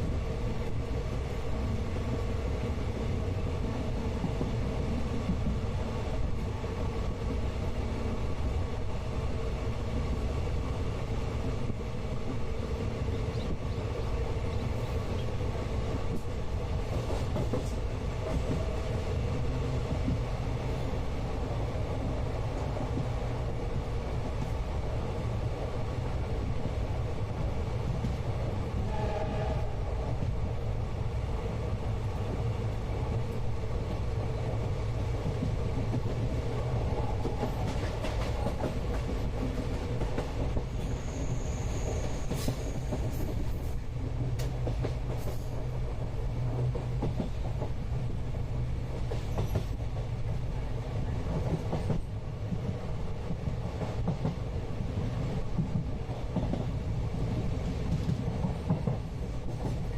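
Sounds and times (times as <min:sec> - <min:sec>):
train coach rumbling on rails: 0:00.0 - 0:59.9
train wheels clicking and knocking: 0:15.2 - 0:18.9, 0:34.9 - 0:50.5, 0:51.2 - 0:59.9
high squeal of wheels: 0:40.7 - 0:43.2.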